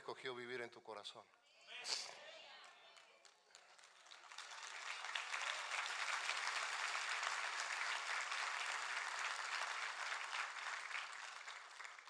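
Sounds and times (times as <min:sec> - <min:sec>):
crowd applauding: 0:02.6 - 0:12.0.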